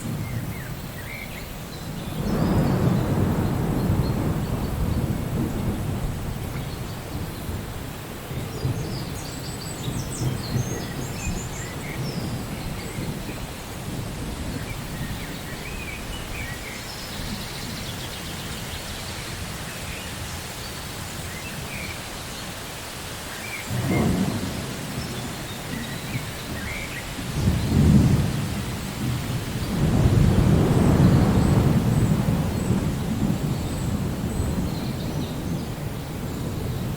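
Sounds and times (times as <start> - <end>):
steady rain: 0.0 - 36.9
thunder rumbling: 2.0 - 17.8, 23.7 - 36.9.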